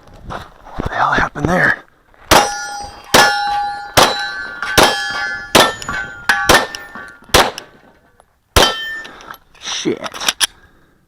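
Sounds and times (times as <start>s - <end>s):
steel target clanging: 2.3s - 7.6s, 8.6s - 9.2s
pistol shots: 2.3s - 7.8s, 8.6s - 9.0s.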